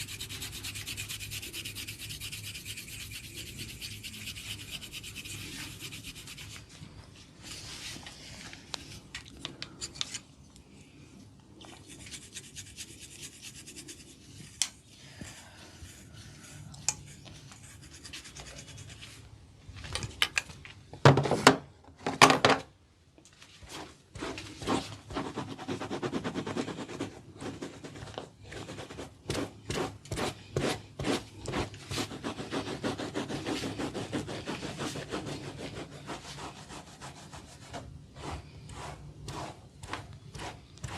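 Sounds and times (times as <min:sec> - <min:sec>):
hands rubbing scalp and hair: 0:00.0 - 0:09.1.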